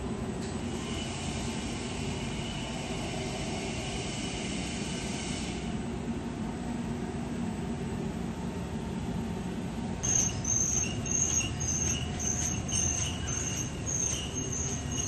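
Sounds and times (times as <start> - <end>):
short high-pitched whines: 10.0 - 15.0.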